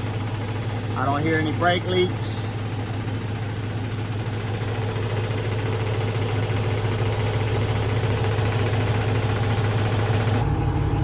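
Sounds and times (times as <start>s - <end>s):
diesel truck engine idling: 0.0s - 11.0s.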